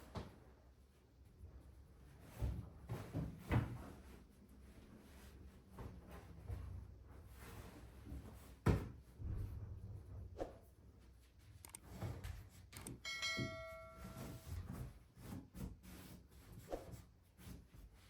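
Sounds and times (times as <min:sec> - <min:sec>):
struck object ringing chime: 0:13.0 - 0:14.6.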